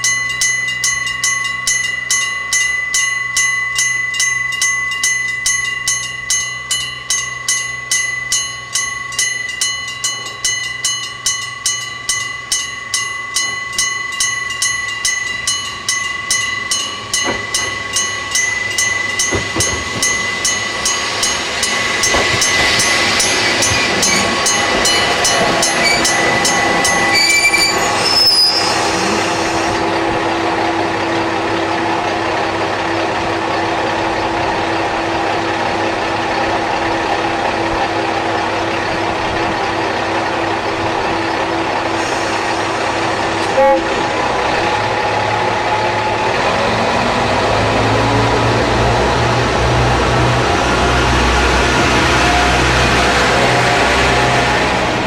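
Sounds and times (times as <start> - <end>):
level crossing bell ringing: 0.0 - 28.2
diesel railcar engine running: 0.0 - 55.0.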